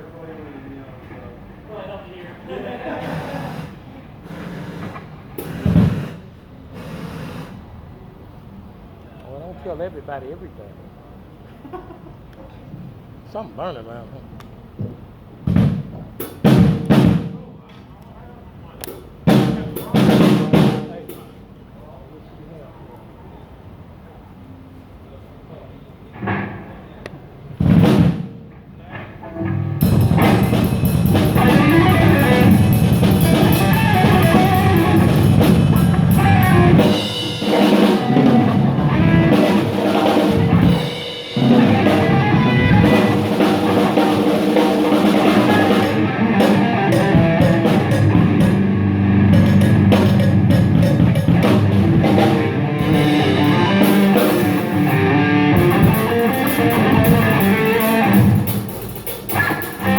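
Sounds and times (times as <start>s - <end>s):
rock band through pa: 19.3s - 21.2s, 27.6s - 28.4s, 29.3s - 59.9s.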